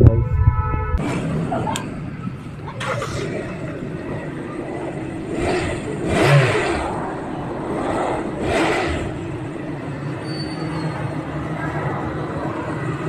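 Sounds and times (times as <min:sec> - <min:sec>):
steady low rumble: 0:00.0 - 0:10.2
vehicle engines passing by: 0:01.0 - 0:13.0.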